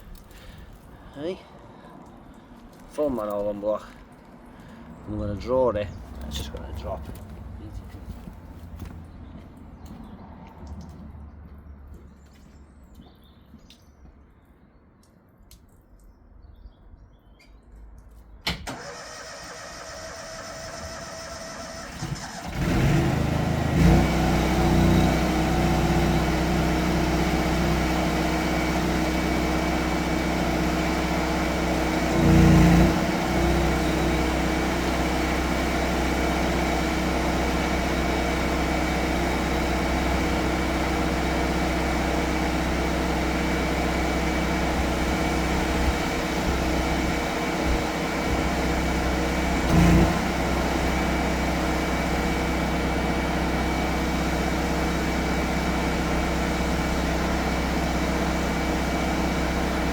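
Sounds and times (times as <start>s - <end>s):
machine engine running: 20.4s - 59.9s.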